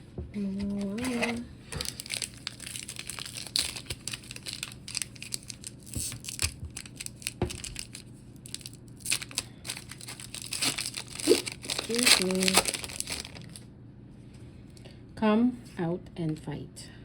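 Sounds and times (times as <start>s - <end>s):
foil wrapper crinkling and tearing: 0.6s - 13.6s.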